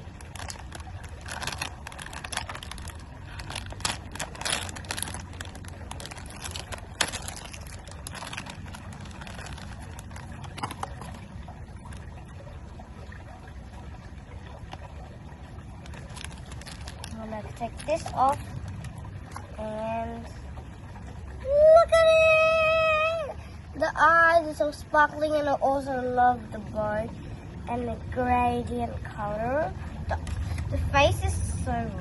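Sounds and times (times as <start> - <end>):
steady low hum: 0.0 - 32.0
packaging clicks and rustles: 0.1 - 12.0, 15.8 - 19.5.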